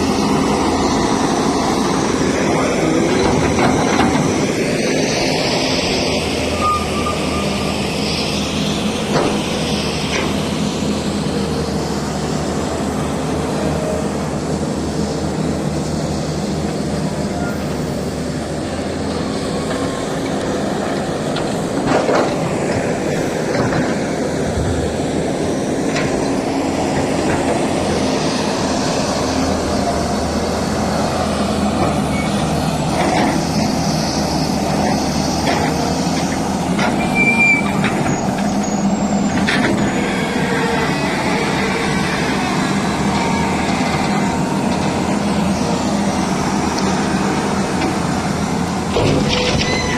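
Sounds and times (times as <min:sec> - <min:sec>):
heavy diesel machinery engines: 0:00.0 - 0:49.9.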